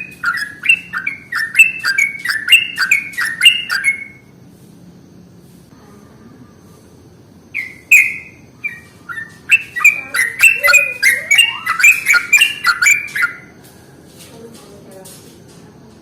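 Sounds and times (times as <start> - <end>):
bird calling with bubbly chatter: 0.0 - 4.3, 7.5 - 13.5.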